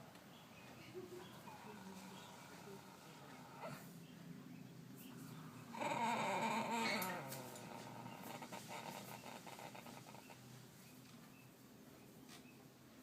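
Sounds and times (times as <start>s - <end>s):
horse snoring: 1.4s - 3.9s, 5.6s - 10.3s.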